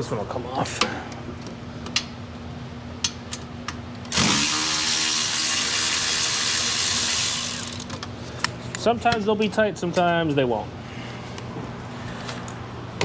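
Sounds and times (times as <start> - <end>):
cordless power tool spinning: 4.1 - 7.9.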